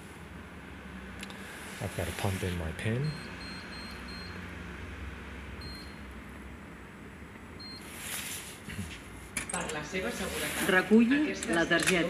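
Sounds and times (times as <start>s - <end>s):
keypad beeps: 3.0s - 4.4s, 5.6s - 6.0s, 7.6s - 7.8s.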